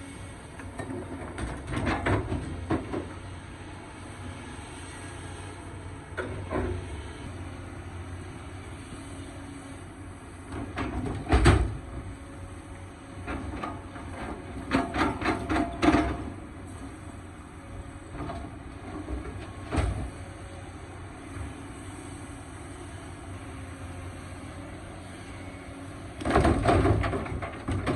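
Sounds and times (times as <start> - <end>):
excavator engine humming: 0.0 - 27.9
machine knocks and bangs: 10.6 - 11.8, 26.2 - 27.9.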